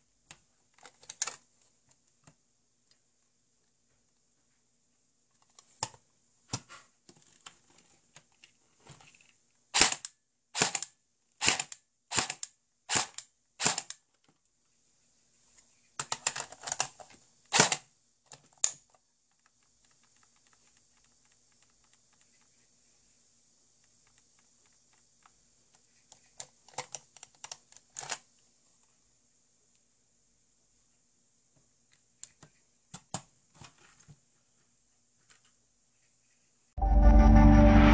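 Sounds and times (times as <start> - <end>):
airsoft gun shots: 9.8 - 10.0, 10.6 - 10.8, 11.4 - 13.9, 17.5 - 17.8
sharp mechanical clicks: 9.8 - 14.0, 17.5 - 17.8.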